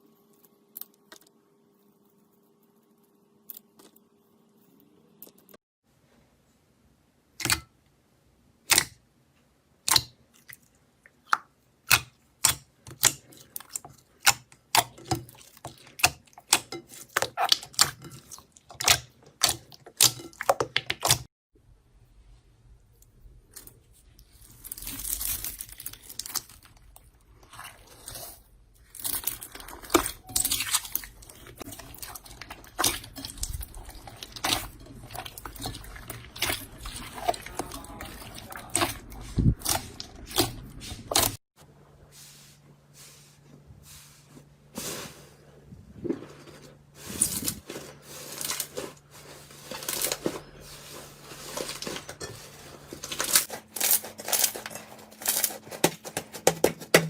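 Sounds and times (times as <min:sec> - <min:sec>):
slime squishing: 0:09.8 - 0:21.3, 0:23.0 - 0:41.4.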